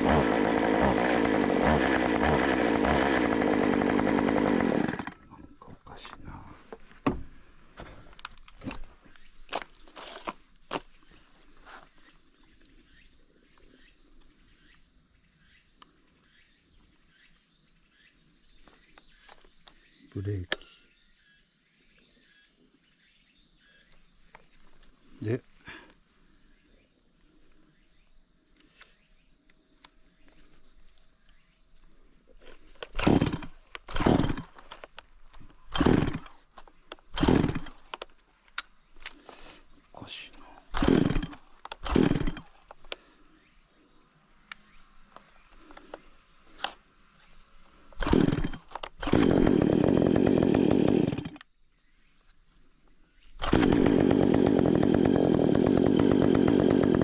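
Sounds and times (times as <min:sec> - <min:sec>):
chainsaw pull-start cranking: 0:00.0 - 0:05.3, 0:32.4 - 0:38.1, 0:40.7 - 0:42.9, 0:48.0 - 0:51.5, 0:53.4 - 0:57.0.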